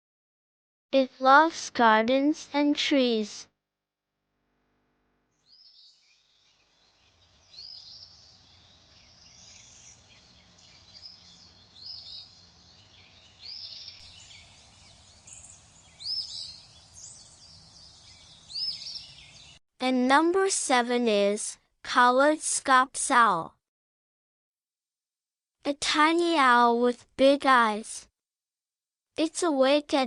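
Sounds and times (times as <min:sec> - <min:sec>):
faint outdoor hiss: 0:04.6 - 0:19.5.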